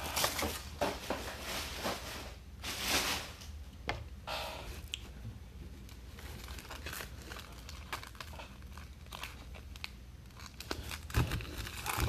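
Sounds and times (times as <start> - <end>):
foil wrappers tearing and crinkling: 6.0 - 12.0.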